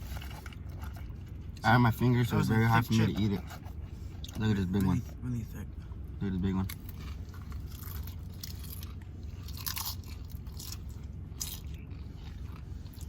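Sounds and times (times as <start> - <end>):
low steady hum: 0.0 - 13.0
tortilla chip crunching: 6.5 - 13.0.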